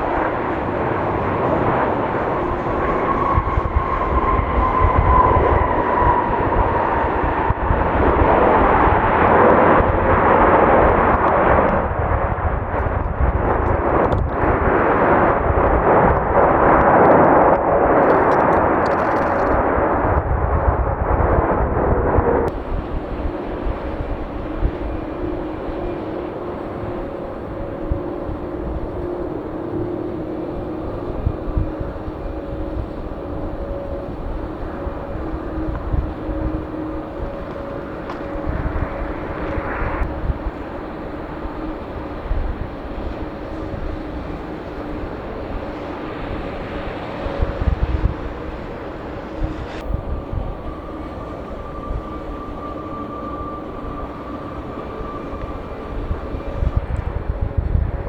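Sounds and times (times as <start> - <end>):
jet engines roaring: 0.0 - 58.0
faint steady hum: 22.5 - 58.0.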